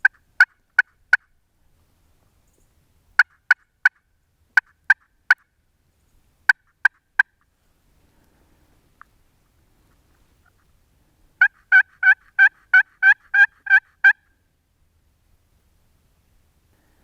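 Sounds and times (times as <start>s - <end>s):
turkey call yelping: 11.4s - 14.3s.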